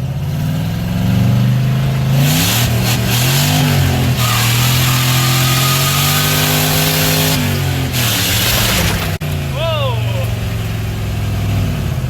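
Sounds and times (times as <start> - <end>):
turbocharged car engine accelerating: 0.0 - 12.0
loud rushing noise: 4.2 - 9.2.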